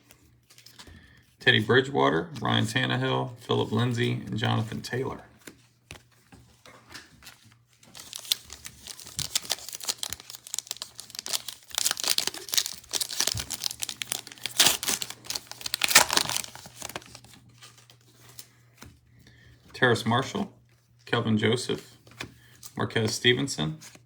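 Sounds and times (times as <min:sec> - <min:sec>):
wrapper tearing and crinkling: 0:07.9 - 0:18.0.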